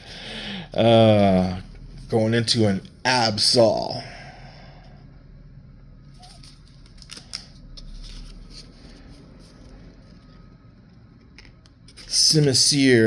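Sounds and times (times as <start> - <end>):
low steady hum: 0.0 - 13.0
cards clicking and rustling: 6.2 - 10.4, 11.2 - 12.7.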